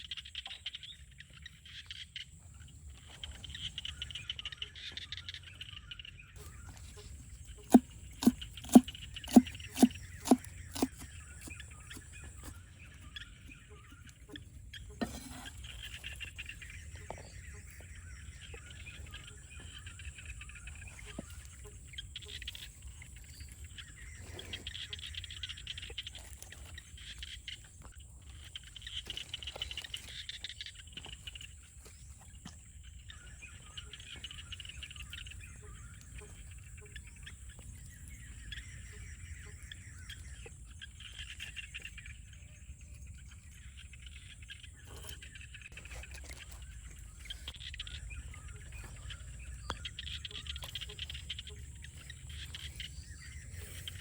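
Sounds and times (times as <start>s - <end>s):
chirping animal calls: 32.7s - 54.0s.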